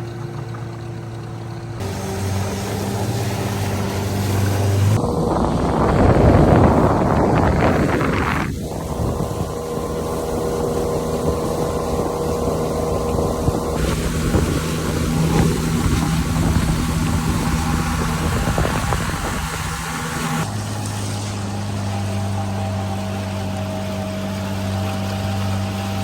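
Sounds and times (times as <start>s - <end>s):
boat engine running: 0.0s - 26.0s
rush of wind and water: 1.8s - 26.0s.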